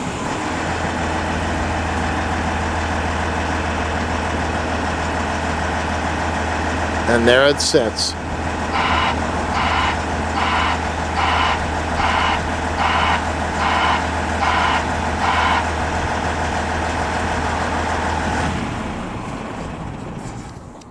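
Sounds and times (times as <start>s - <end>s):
diesel engine hum: 0.0s - 20.9s
vehicle backup alarm beeping: 8.6s - 15.9s.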